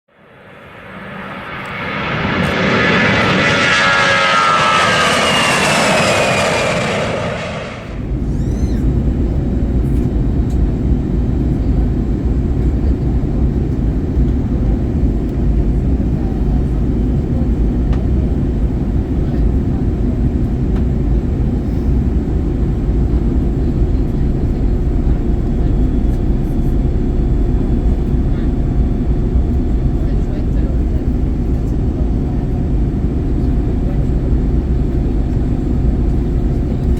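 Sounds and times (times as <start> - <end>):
jet passing with falling whine: 0.1 - 8.8
aircraft cabin low rumble: 0.2 - 36.9.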